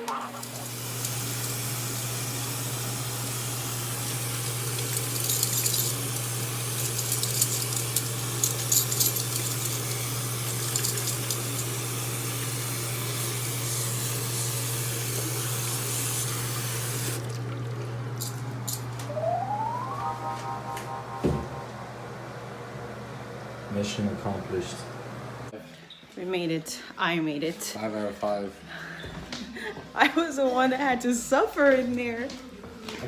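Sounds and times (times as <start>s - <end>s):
low hum: 19.0s - 23.5s.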